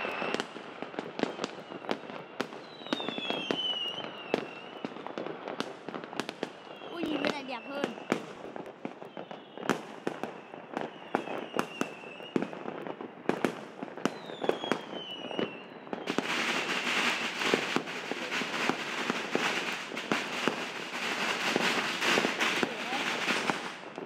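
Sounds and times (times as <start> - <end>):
fireworks whistles falling: 0.0 - 5.4, 6.0 - 24.0
fireworks bangs: 0.0 - 24.0
fireworks crackle: 0.0 - 24.0.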